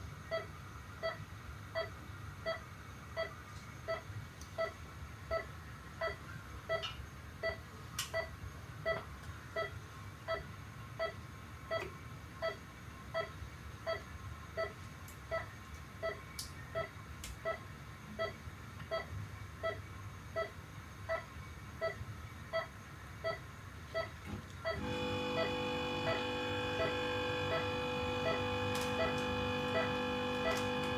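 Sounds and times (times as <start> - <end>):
heart monitor beeping: 24.0 - 30.9
held electronic tone: 24.7 - 30.9.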